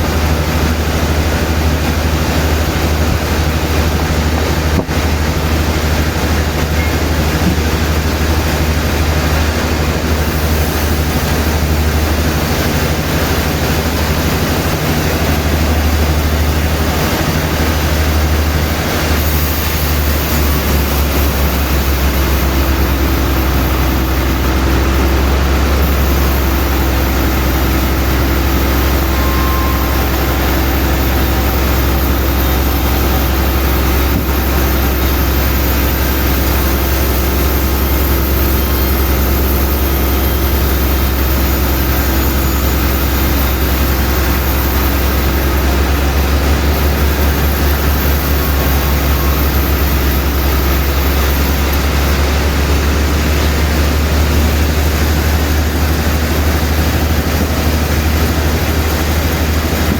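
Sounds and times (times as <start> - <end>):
sawmill machinery humming: 0.0 - 59.9
high steady tone: 6.4 - 9.0, 10.4 - 54.6.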